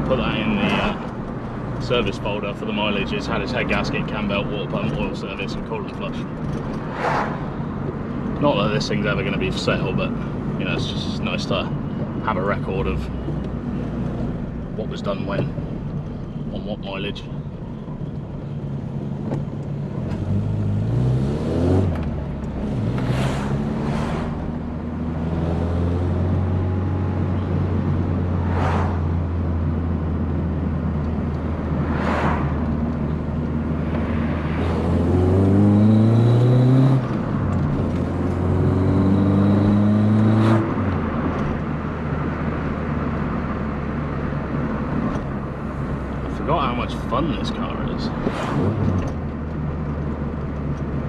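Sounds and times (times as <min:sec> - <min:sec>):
whooshes of passing traffic: 0:00.0 - 0:01.9, 0:06.0 - 0:08.5, 0:18.5 - 0:51.0
car engine revving through gears: 0:18.8 - 0:51.0.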